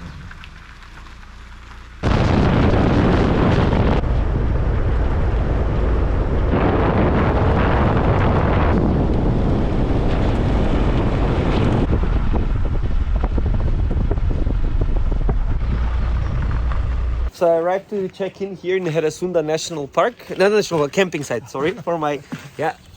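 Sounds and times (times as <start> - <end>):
vehicle rumble on road: 0.0 - 2.8, 4.0 - 17.3
wind buffeting microphone: 2.0 - 17.3.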